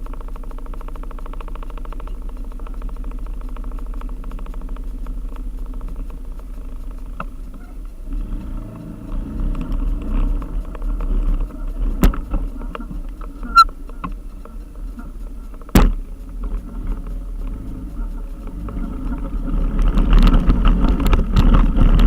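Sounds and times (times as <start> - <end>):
motorbike engine rumbling: 0.0 - 22.0
sharp knocks: 15.7 - 16.0.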